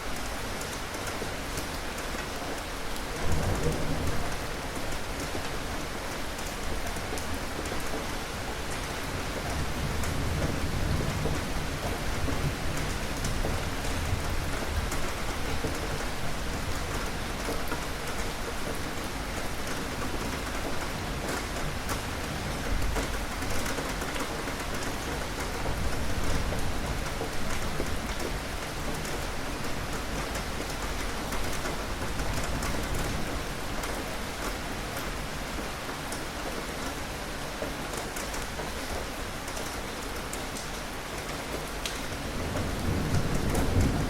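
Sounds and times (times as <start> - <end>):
steady rain: 0.0 - 44.0
rumbles of thunder: 3.2 - 5.6, 9.4 - 17.0, 42.1 - 44.0.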